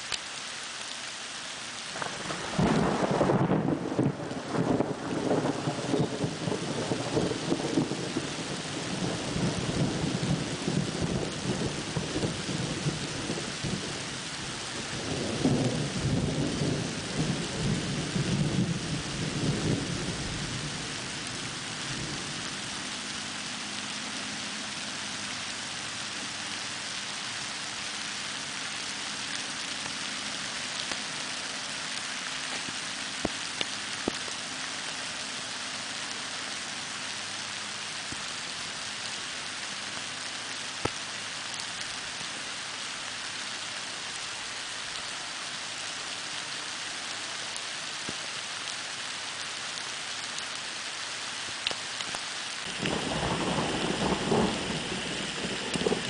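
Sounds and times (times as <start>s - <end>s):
rain hiss: 0.0s - 56.0s
rolling thunder: 2.0s - 13.9s, 52.7s - 56.0s.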